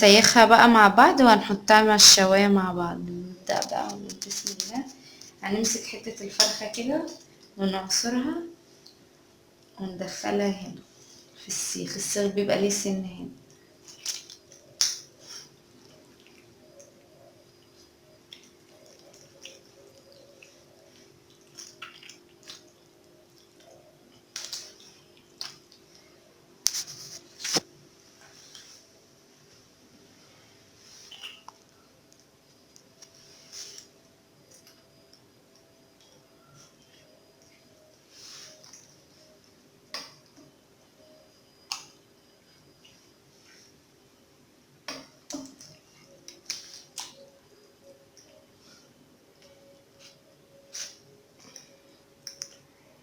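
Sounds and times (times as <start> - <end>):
wet squishing of chicken: 18.3 - 26.0, 30.9 - 31.7.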